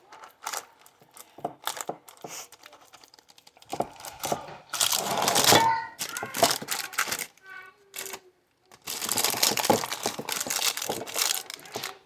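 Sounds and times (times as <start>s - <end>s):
spoon scraping dough: 0.0s - 7.2s
paper crinkling: 0.0s - 12.0s.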